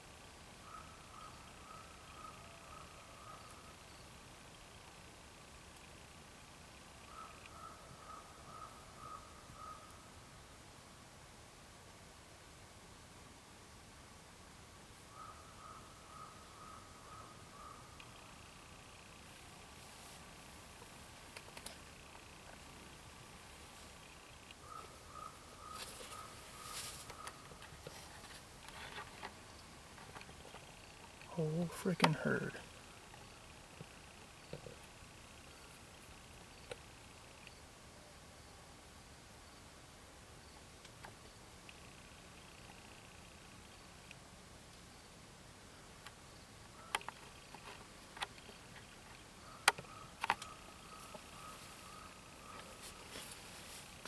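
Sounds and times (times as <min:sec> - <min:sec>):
soft hiss: 0:00.0 - 0:54.0.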